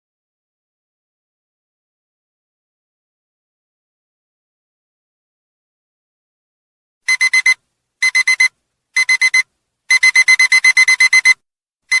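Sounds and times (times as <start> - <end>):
alarm clock beeping: 7.1 - 12.0.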